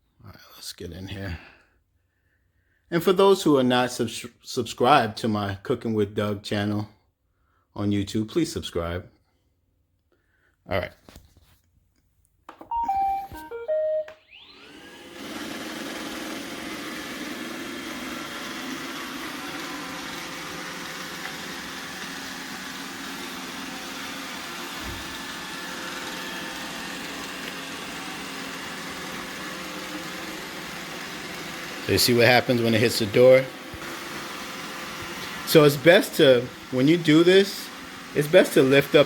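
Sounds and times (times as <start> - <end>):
robot vacuum beeping tune: 12.7 - 15.0
vacuum motor whine: 12.8 - 39.0.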